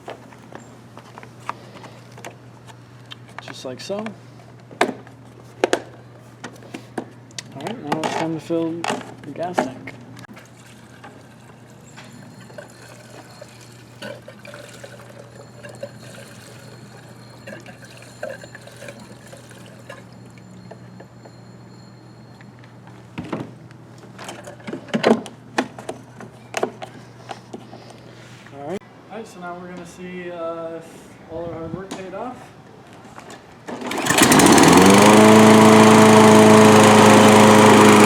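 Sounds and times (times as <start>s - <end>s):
fuel trickling into tank: 10.3s - 20.6s.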